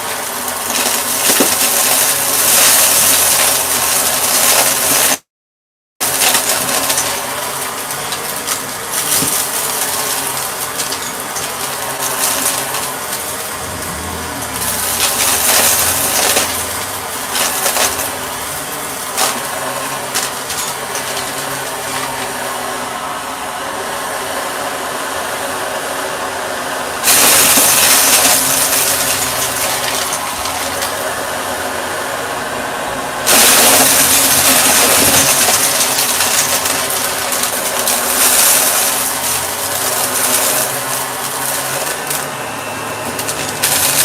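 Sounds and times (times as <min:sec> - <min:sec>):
vacuum cleaner running: 0:00.0 - 0:05.2, 0:06.0 - 0:44.0.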